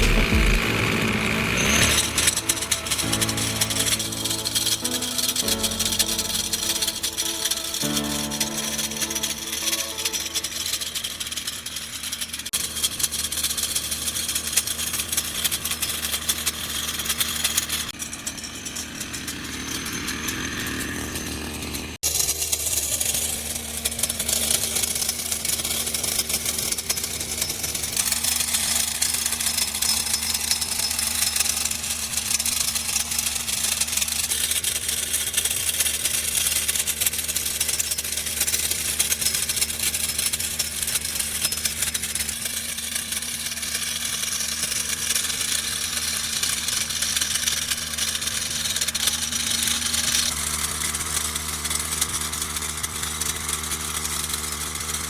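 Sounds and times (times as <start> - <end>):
small engine running: 0.0 - 55.0.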